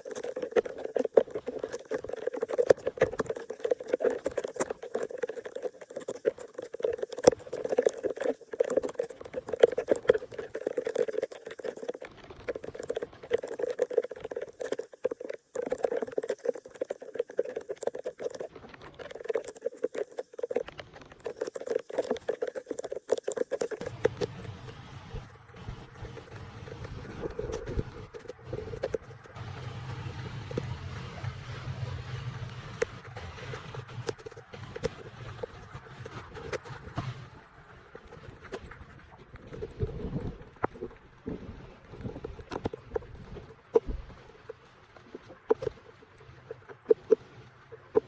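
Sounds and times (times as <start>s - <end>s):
water pattering and splashing: 0.0s - 48.0s
steady high hiss: 23.8s - 39.2s
low hum: 23.8s - 42.4s.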